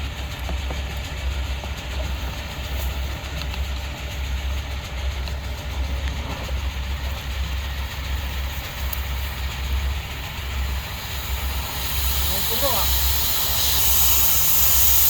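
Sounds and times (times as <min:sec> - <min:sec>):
machine low rumble: 0:00.0 - 0:15.0
rushing hiss of air: 0:08.4 - 0:15.0.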